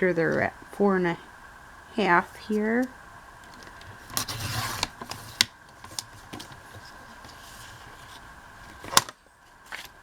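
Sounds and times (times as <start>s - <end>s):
paper rustling: 4.0s - 9.0s.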